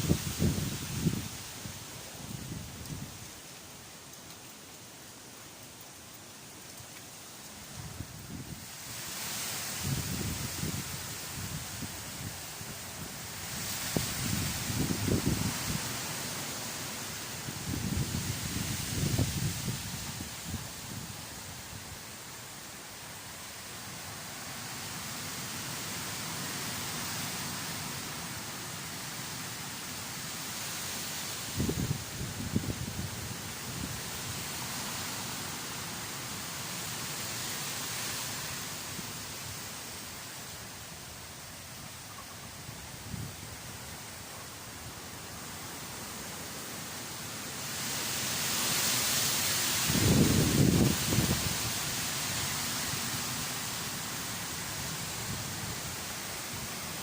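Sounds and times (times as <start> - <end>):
rain: 0.0 - 57.0
wind buffeting microphone: 17.6 - 20.6, 49.9 - 51.8.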